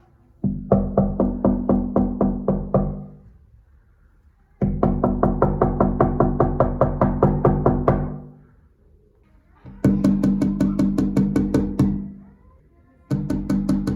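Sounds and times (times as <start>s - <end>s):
knocking on window glass: 0.4s - 3.3s, 4.6s - 8.4s, 9.7s - 12.2s, 13.1s - 13.9s.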